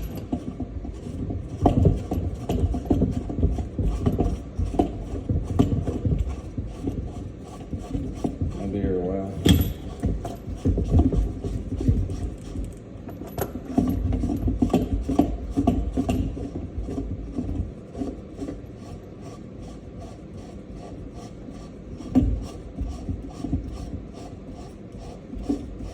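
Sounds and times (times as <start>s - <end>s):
hardware scraping and rubbing: 0.0s - 25.9s.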